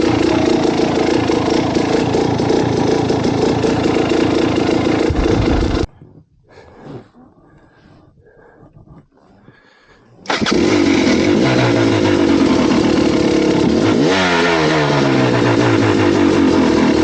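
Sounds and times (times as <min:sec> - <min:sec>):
vehicle engine running: 0:00.0 - 0:05.9, 0:10.3 - 0:17.0.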